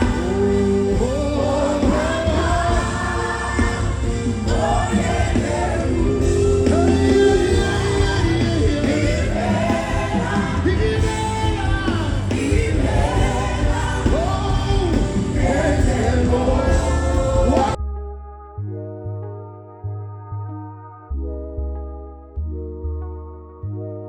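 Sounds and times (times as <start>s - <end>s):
music with singing: 0.0s - 18.0s
heavy bass: 0.0s - 23.7s.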